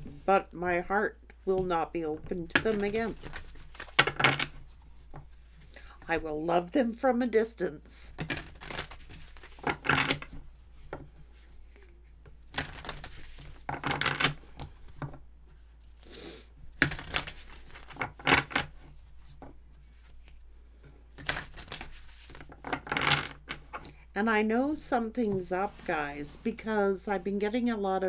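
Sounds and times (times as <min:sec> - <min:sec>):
cards being shuffled: 0:02.3 - 0:05.7, 0:08.1 - 0:16.1, 0:16.7 - 0:20.4, 0:21.1 - 0:23.8.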